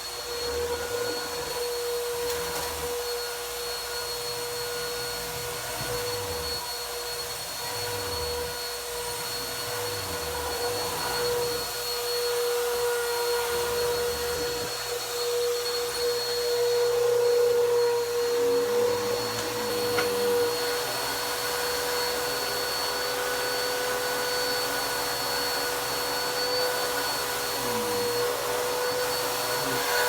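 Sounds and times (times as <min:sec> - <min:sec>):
vacuum cleaner motor whine: 0:00.0 - 0:30.0.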